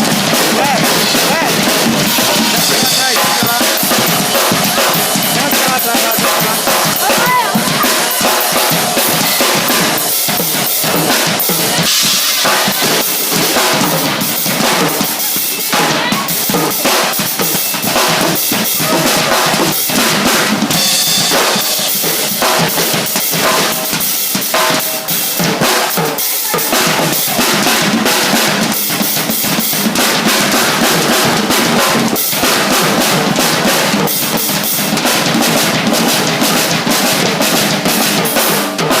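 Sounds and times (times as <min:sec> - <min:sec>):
drumming group playing: 0:00.0 - 0:39.0.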